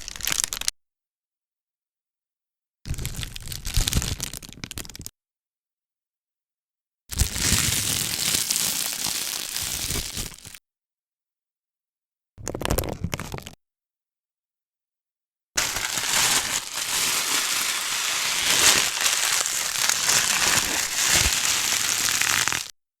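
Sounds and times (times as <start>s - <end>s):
plastic bags crinkling: 0.0s - 0.7s, 15.6s - 22.7s.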